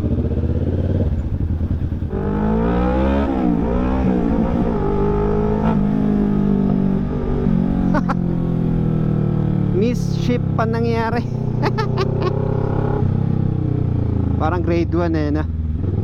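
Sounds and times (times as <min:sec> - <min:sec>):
motorcycle engine idling and revving: 0:00.0 - 0:16.0.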